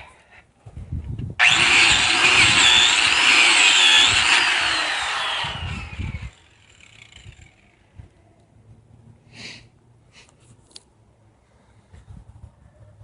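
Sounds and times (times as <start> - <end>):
power tool whining and spinning down: 1.4 - 8.0.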